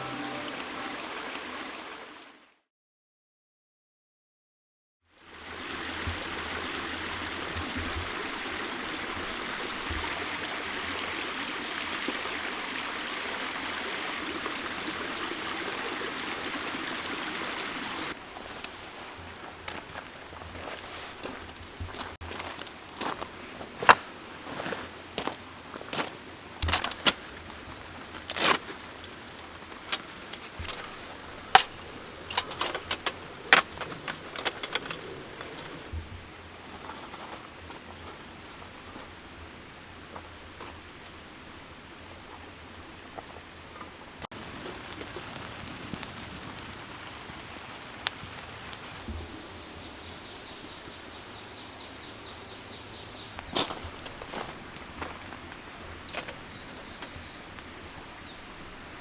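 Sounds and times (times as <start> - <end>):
rustling scrapes: 18.4 - 22.5, 36.6 - 39.1
steady rain falling: 23.8 - 42.2, 42.8 - 51.3, 53.3 - 59.0.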